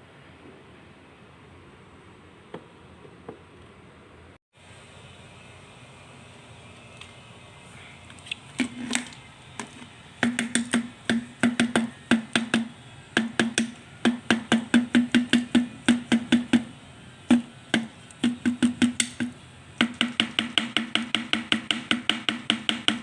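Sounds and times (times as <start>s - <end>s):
rapid knocks on hollow object: 10.2s - 16.7s, 17.3s - 23.0s.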